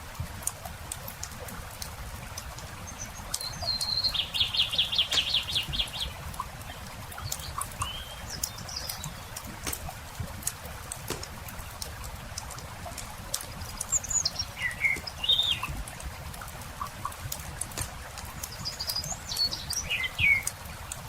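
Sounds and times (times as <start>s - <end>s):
campfire crackling and popping: 0.0s - 21.0s
songbird singing and trilling: 2.8s - 9.5s, 13.6s - 15.8s, 18.3s - 20.5s.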